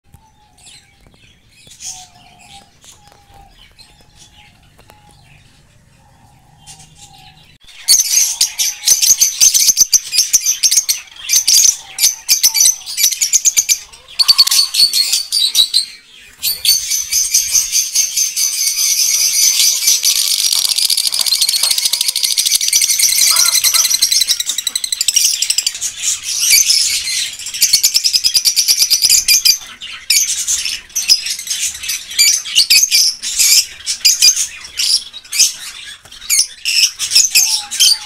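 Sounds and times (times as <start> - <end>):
small birds chirping: 0.1 - 38.0.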